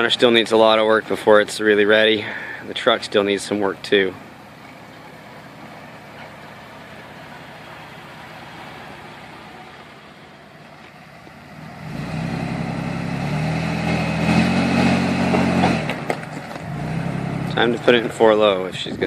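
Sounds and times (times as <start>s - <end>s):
off-road vehicle engine running: 0.0s - 19.0s.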